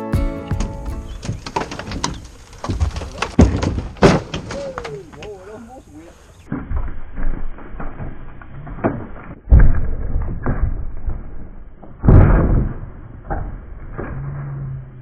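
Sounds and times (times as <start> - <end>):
heavy thuds: 0.2 - 5.4
wooden boards knocking: 0.5 - 5.3.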